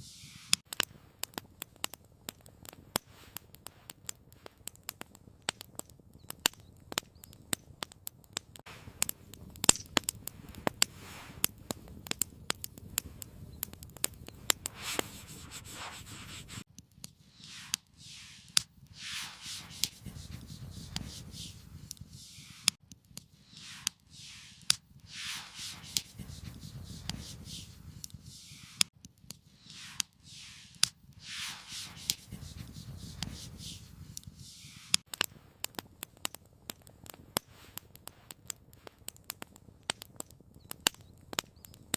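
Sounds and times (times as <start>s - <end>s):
scraping and rubbing strokes: 0.0s - 0.6s, 9.8s - 11.5s, 14.3s - 35.1s
soft hiss: 0.0s - 0.6s, 14.5s - 28.9s, 29.5s - 35.0s
campfire crackling and popping: 0.2s - 41.9s.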